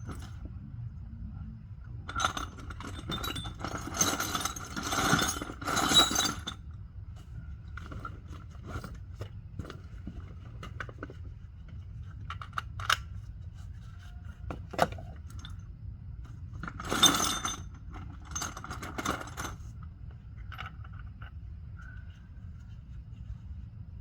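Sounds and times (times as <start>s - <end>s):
steady low hum: 0.0s - 24.0s
metal tools clinking and rattling: 2.1s - 6.6s, 16.6s - 19.7s.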